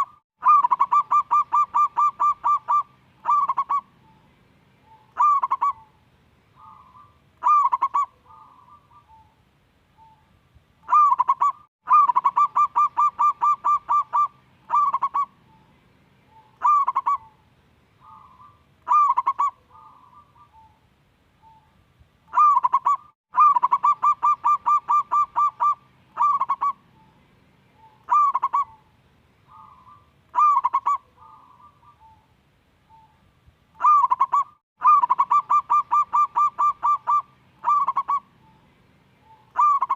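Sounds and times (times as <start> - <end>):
dove cooing: 0.0 - 4.2, 4.8 - 9.4, 10.8 - 15.7, 16.3 - 17.4, 18.0 - 20.8, 22.3 - 27.2, 27.8 - 28.9, 29.5 - 32.3, 33.8 - 39.9.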